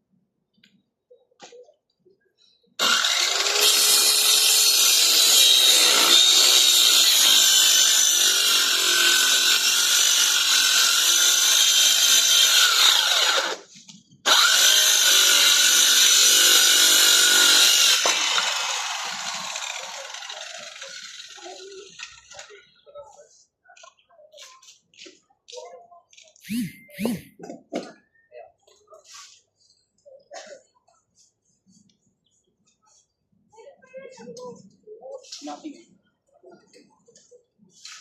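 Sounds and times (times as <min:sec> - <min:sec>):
handheld power tool running: 0:02.8 - 0:13.6, 0:14.3 - 0:22.0, 0:26.5 - 0:27.3.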